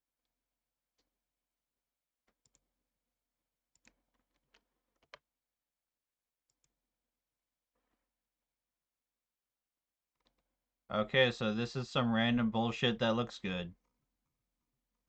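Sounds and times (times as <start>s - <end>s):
computer mouse and keyboard clicking: 3.7s - 5.2s.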